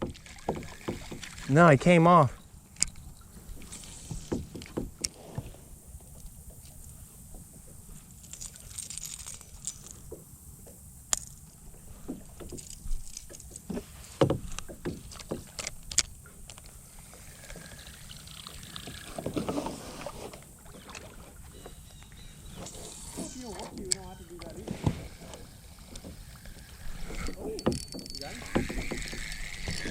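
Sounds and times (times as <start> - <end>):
paddle knocking against kayak: 0.0 - 1.5, 3.4 - 5.6, 13.3 - 15.6, 18.8 - 29.9
soft water splashing: 0.0 - 4.4, 16.2 - 29.9.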